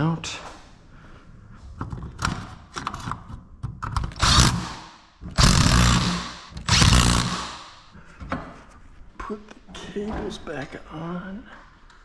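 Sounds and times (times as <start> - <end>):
power driver running: 4.2 - 7.8.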